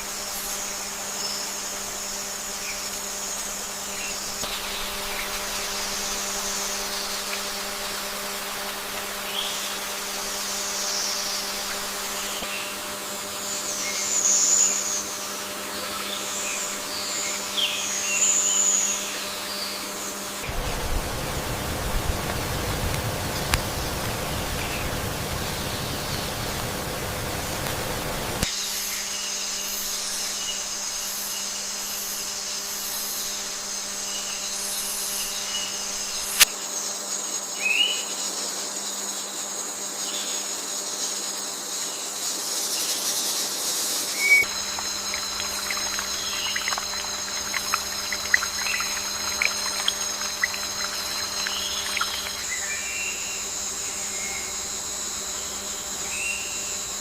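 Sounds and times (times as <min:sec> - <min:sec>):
high-pitched insect drone: 0:00.0 - 0:57.0
bird chirps: 0:44.2 - 0:54.5.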